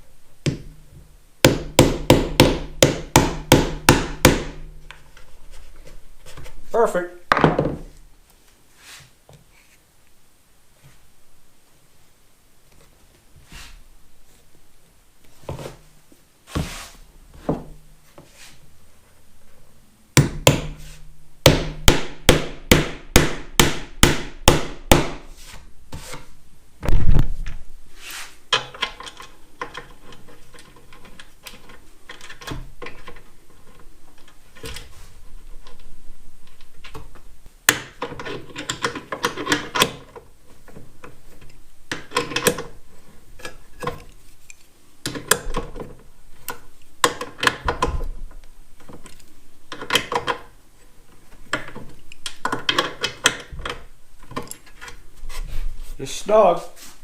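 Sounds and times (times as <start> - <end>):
hammer knocking on wood: 1.4 - 4.6
tapping and rubbing on wood: 1.4 - 6.6.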